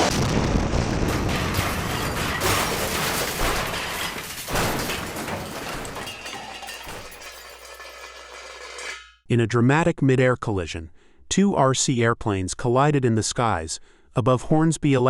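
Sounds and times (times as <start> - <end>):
loud rumbling crash: 0.0 - 9.1.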